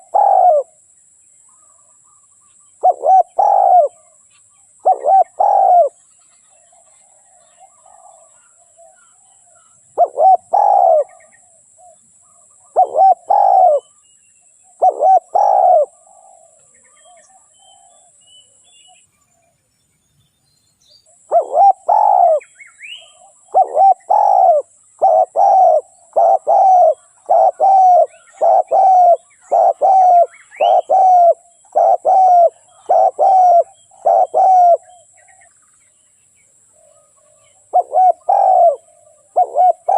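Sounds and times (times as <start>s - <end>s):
dove cooing: 0.0s - 0.8s, 2.8s - 4.2s, 4.8s - 6.0s, 6.6s - 13.9s, 14.6s - 18.2s, 21.2s - 35.5s, 36.8s - 39.9s
small birds chirping: 0.0s - 39.9s.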